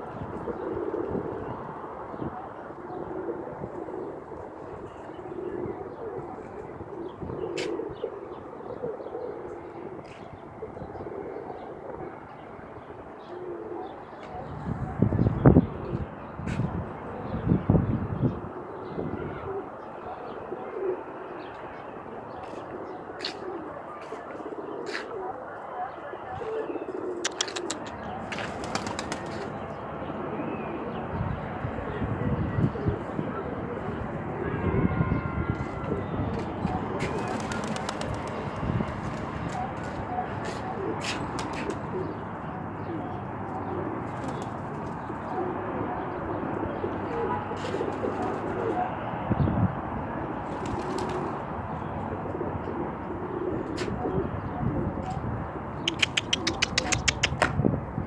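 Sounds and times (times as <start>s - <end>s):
doves cooing: 0.0s - 12.4s, 13.2s - 15.0s, 18.6s - 34.4s, 35.9s - 49.5s, 50.5s - 55.2s, 55.8s - 57.5s
sharp clicks: 27.3s - 28.0s, 55.9s - 57.5s.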